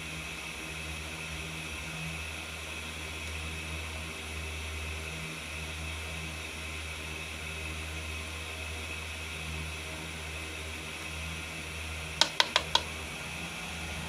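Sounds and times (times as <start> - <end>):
sharp clicks: 12.2 - 12.9.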